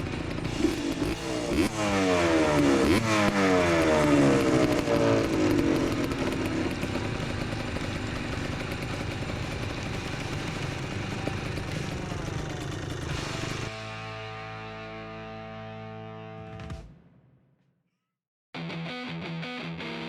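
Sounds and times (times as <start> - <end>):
atv engine: 0.0 - 14.1.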